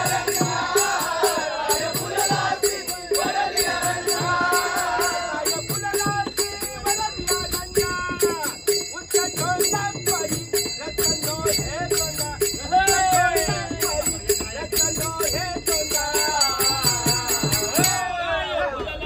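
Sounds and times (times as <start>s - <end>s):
person singing devotional song: 0.0s - 18.1s
sharp percussion beat: 0.0s - 18.2s.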